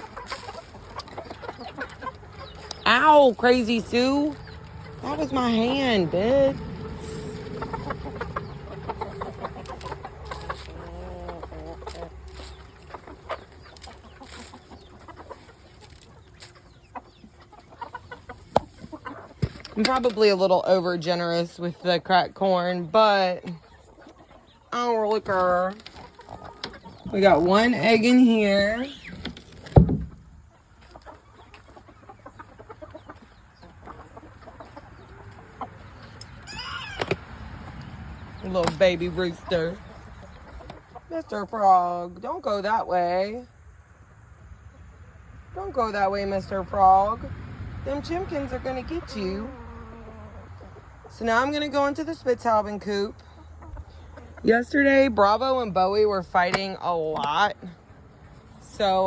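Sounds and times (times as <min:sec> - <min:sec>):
chickens clucking: 0:00.0 - 0:59.0
short pitched chicken call: 0:36.5 - 0:37.1.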